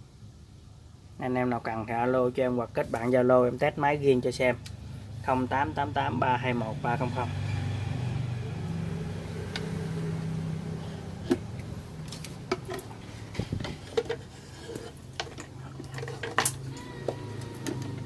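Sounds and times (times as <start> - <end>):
steady low hum: 0.0 - 18.0
hard objects clicking and clinking: 11.3 - 18.0.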